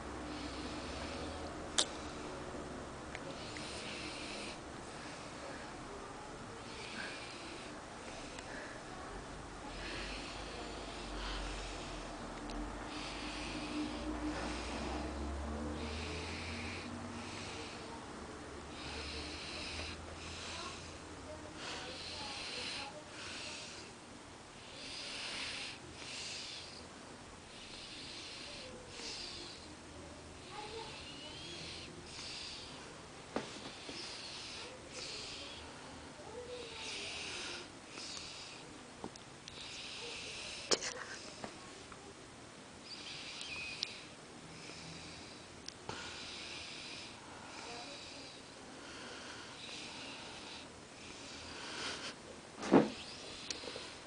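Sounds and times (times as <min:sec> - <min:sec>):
wheezy snoring breaths: 0:00.0 - 0:41.6, 0:42.8 - 0:54.0
person snoring: 0:12.9 - 0:17.9.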